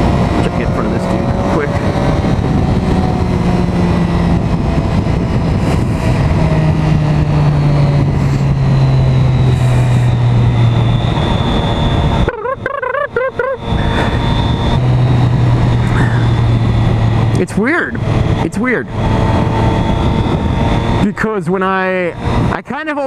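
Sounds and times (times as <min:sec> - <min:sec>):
motorcycle engine running: 0:00.0 - 0:23.0
wind noise: 0:00.0 - 0:23.0
wavering voice-like sound: 0:12.2 - 0:14.2.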